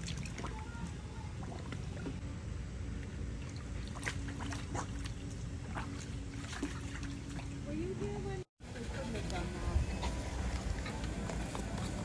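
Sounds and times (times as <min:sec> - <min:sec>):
water sloshing and splashing: 0:00.0 - 0:02.2, 0:02.9 - 0:08.4
faint steady hum: 0:00.0 - 0:12.0.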